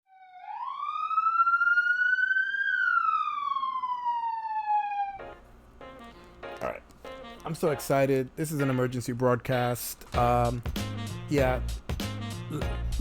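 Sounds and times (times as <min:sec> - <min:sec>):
siren wailing: 0:00.1 - 0:05.4.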